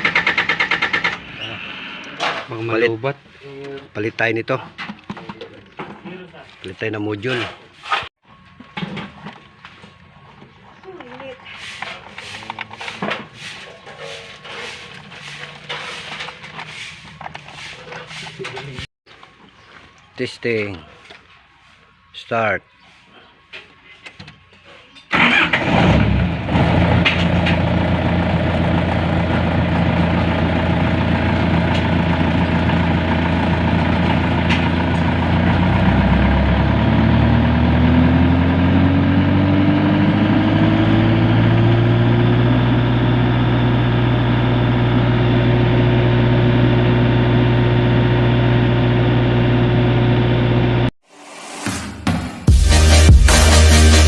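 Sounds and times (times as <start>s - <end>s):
generator engine running: 25.2s - 50.9s.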